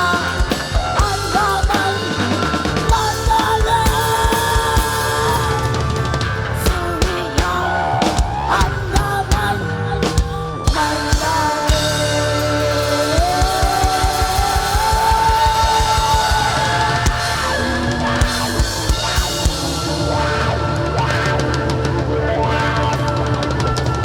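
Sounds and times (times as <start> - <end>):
rapid kick drum beats: 0.0 - 21.7
live rock band playing: 0.0 - 24.0.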